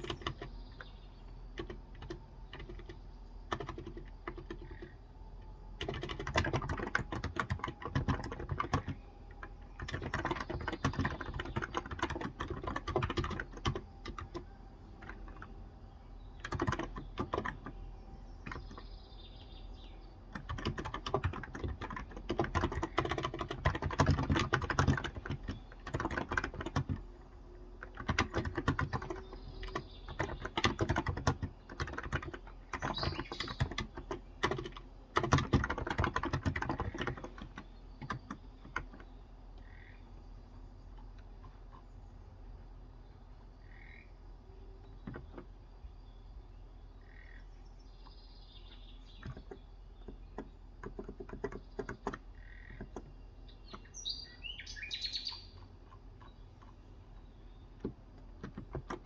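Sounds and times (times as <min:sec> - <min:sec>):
keyboard typing: 0:00.0 - 0:15.6, 0:16.4 - 0:18.9, 0:20.3 - 0:39.1, 0:44.9 - 0:45.6, 0:49.2 - 0:53.1, 0:57.8 - 0:59.0.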